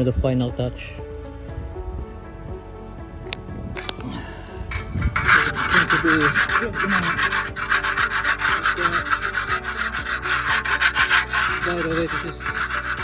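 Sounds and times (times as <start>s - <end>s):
rough scraping on hard surface: 3.8s - 13.0s.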